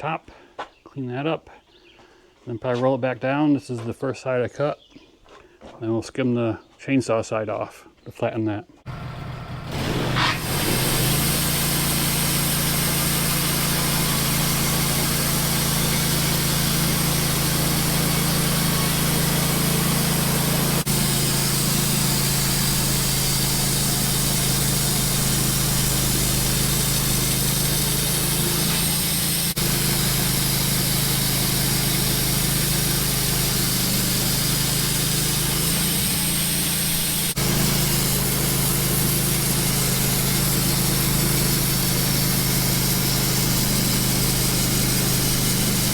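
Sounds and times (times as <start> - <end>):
bandsaw mill cutting log: 8.9 - 45.9.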